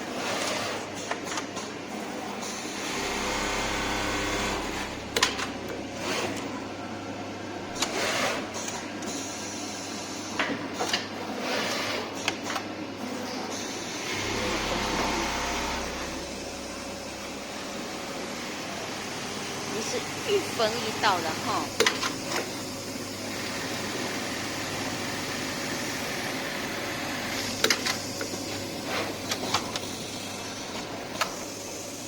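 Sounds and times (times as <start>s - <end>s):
sewing machine running: 2.2s - 6.6s, 7.7s - 8.7s, 13.8s - 32.0s
mechanism clicks and knocks: 21.7s - 22.5s.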